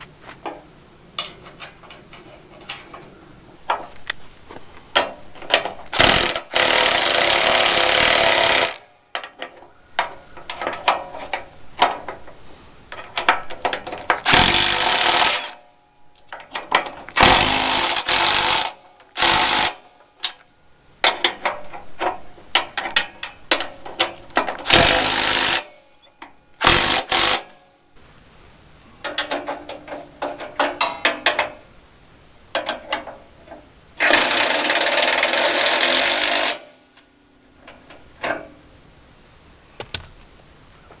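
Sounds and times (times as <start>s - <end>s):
impact wrench hammering bolts: 5.0s - 12.3s, 12.9s - 15.6s, 16.3s - 20.4s, 21.0s - 25.8s, 26.6s - 27.5s, 29.0s - 31.6s, 34.0s - 36.8s
hand tools clinking: 29.0s - 31.6s.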